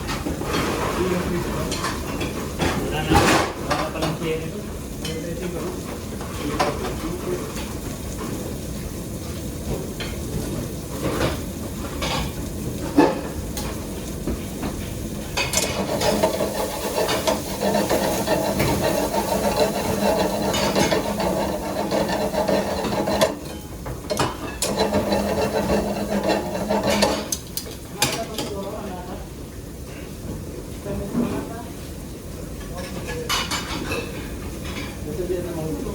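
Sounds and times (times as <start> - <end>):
cooking hiss: 0.1 - 30.9
metal utensils scraping pans: 15.3 - 28.6
sharp clatter: 15.6 - 23.6.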